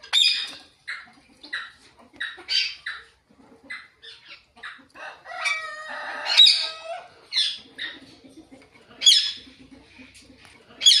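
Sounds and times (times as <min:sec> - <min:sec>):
parakeets squawking: 0:00.0 - 0:03.1, 0:05.4 - 0:08.1, 0:09.0 - 0:09.6, 0:10.8 - 0:11.0.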